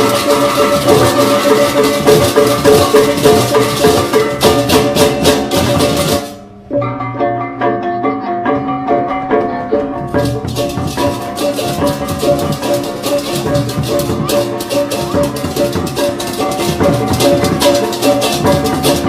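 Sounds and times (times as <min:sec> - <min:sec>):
tuned percussion music with drums: 0:00.0 - 0:19.0.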